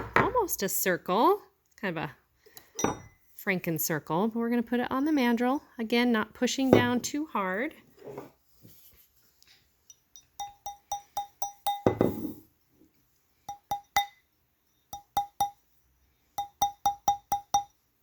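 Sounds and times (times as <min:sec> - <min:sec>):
hammer tapping metal ring: 0:09.9 - 0:12.2, 0:13.5 - 0:14.2, 0:14.9 - 0:15.6, 0:16.4 - 0:17.8.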